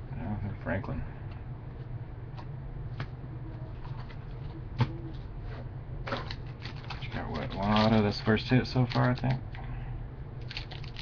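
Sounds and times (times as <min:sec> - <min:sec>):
steady low hum: 0:00.0 - 0:11.0
trading cards being handled: 0:06.1 - 0:09.4.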